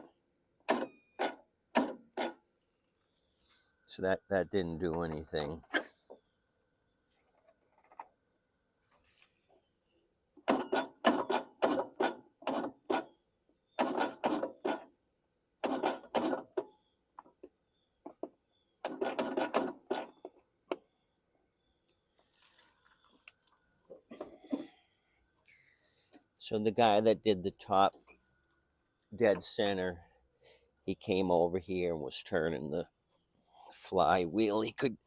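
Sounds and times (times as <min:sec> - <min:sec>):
engine starter cranking: 0:13.8 - 0:14.9, 0:15.6 - 0:16.6.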